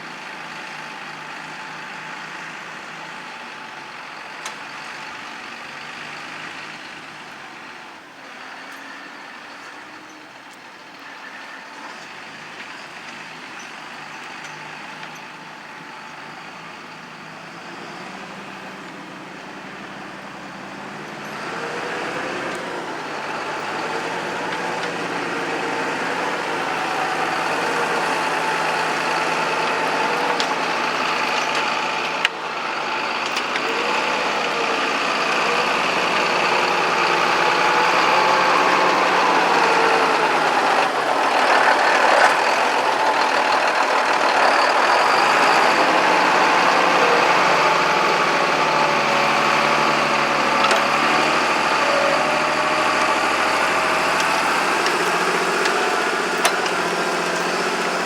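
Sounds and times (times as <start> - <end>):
tractor engine running: 0.0 - 58.0.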